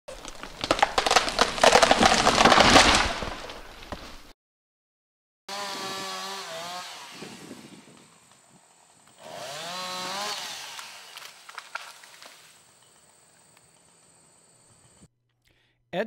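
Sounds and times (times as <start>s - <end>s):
sharp wood cracks: 0.1s - 4.3s, 9.0s - 12.6s
chainsaw cutting: 5.5s - 12.6s.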